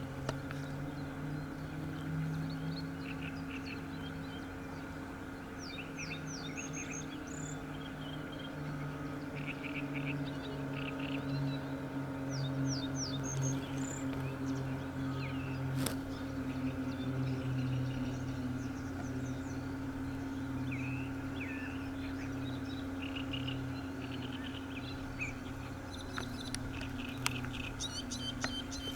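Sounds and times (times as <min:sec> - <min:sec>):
steady low drone: 0:00.0 - 0:28.9
bird chirps: 0:12.3 - 0:28.9.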